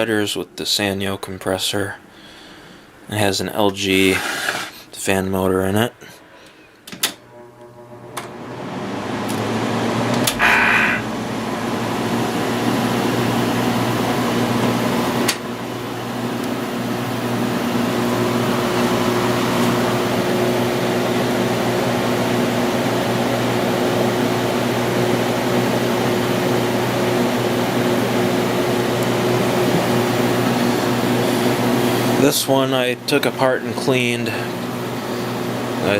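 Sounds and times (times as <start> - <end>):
air conditioner fan rush: 0.0 - 7.2, 8.0 - 35.9
short tone: 10.4 - 11.1.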